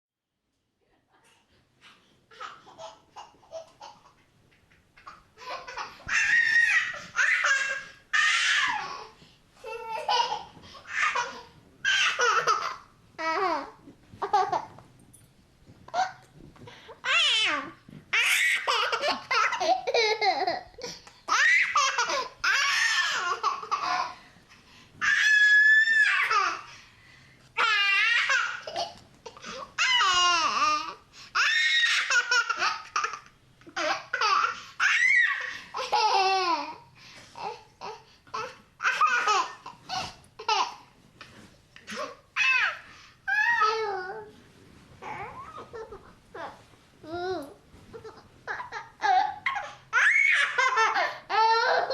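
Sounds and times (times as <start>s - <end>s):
baby laughing: 5.0s - 14.7s, 18.2s - 24.2s
toddler squealing laughter: 48.0s - 51.9s.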